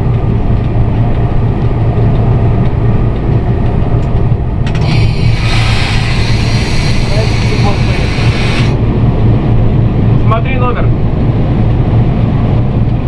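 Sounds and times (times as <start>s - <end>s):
electric locomotive humming: 0.0s - 13.0s
sharp clicks: 0.6s - 8.8s
high hiss: 4.8s - 8.8s.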